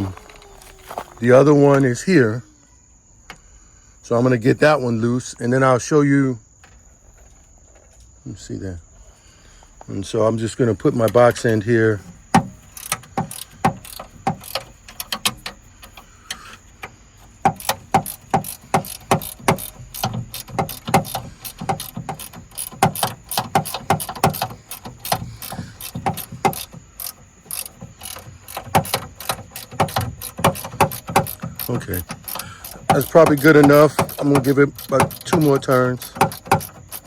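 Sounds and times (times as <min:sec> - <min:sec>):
ratcheting wrench clicking: 0:12.2 - 0:37.0.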